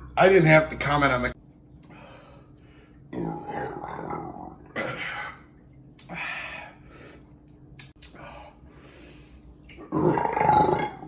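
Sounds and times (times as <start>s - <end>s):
man burping: 9.8s - 11.0s.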